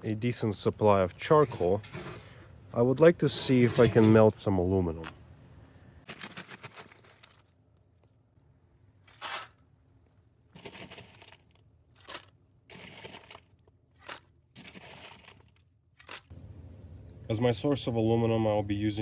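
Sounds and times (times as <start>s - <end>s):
charcoal crunching and scraping: 1.2s - 4.3s, 6.0s - 7.6s, 9.0s - 9.6s, 10.5s - 16.4s.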